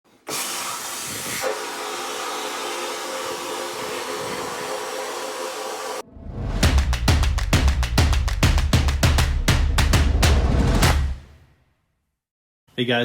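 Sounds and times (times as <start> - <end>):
spray gun hissing: 0.4 - 6.0.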